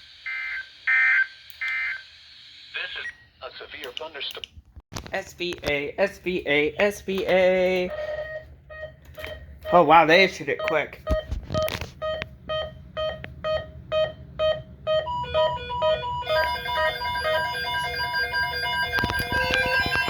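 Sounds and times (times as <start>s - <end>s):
weather radio alert beeps: 12.0s - 20.0s.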